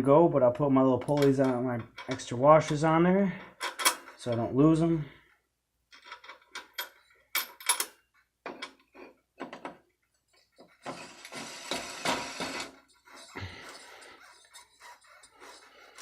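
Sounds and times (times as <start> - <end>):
small metal parts clinking: 5.9 - 8.0
metal scraping and rattling: 10.3 - 16.0.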